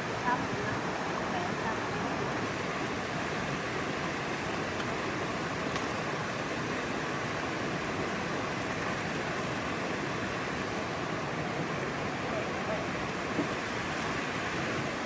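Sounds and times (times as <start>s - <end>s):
running water rushing: 0.0s - 15.0s.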